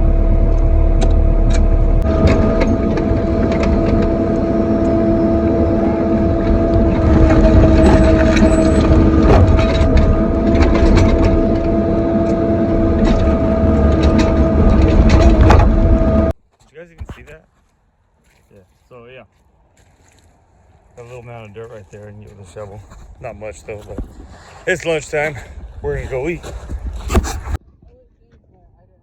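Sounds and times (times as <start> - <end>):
excavator engine whining: 0.0 - 16.4.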